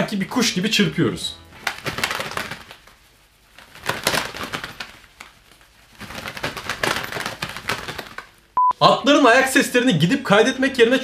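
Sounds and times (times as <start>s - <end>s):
leather gloves flapping together: 1.5s - 8.6s.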